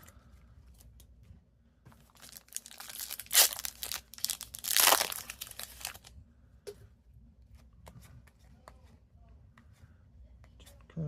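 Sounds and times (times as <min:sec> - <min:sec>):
wrapper crinkling: 0:02.1 - 0:06.1
wrapper ripping: 0:02.2 - 0:06.1.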